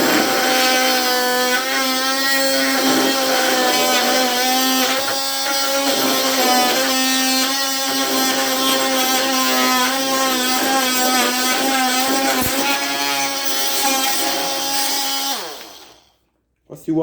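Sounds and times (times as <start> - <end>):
oscillating tool cutting wood: 0.0 - 16.1.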